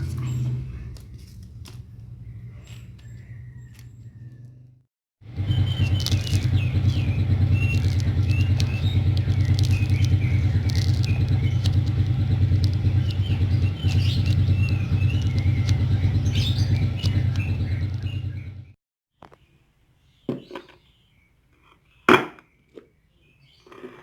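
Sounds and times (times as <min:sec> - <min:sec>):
small birds chirping: 0:00.0 - 0:24.0
low rumble: 0:04.3 - 0:18.8
sharp crackles: 0:05.3 - 0:18.6.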